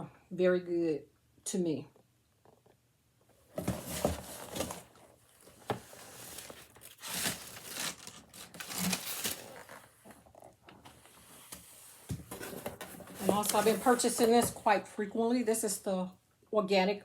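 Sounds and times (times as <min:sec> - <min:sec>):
packaging crinkling and rustling: 0:03.5 - 0:14.5.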